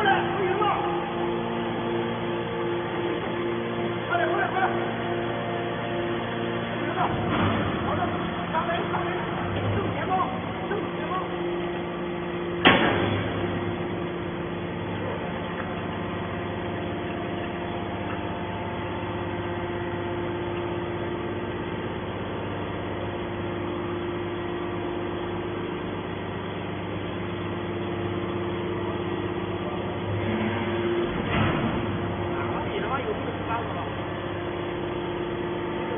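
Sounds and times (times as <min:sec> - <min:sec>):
hydraulic baler humming: 0:00.0 - 0:35.9.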